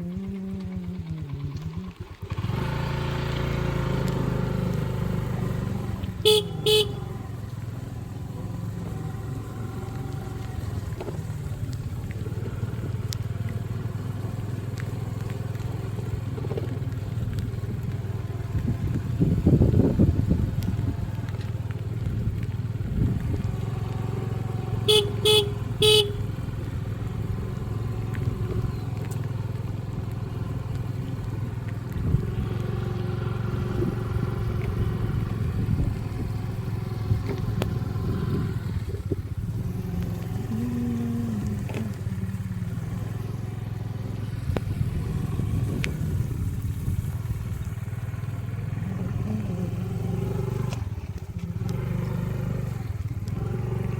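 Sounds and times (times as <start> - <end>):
motorcycle engine running: 0.0 - 53.9
horn beeping: 6.0 - 7.4, 24.7 - 26.4.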